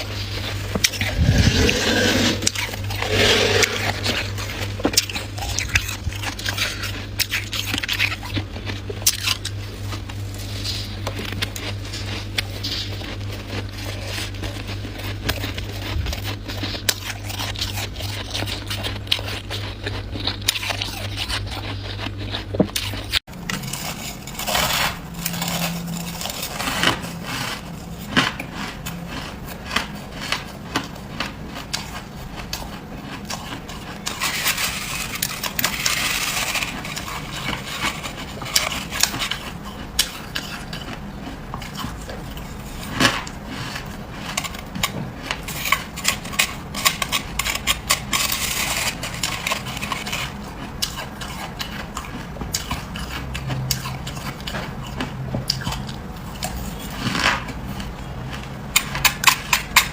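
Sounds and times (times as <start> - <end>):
frost crunching: 0.0 - 59.9
steady low hum: 0.0 - 59.9.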